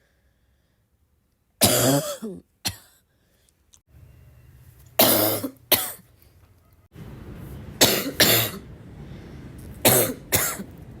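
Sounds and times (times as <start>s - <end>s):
person coughing: 1.6s - 3.0s, 5.0s - 6.0s, 7.8s - 8.6s, 9.8s - 10.7s.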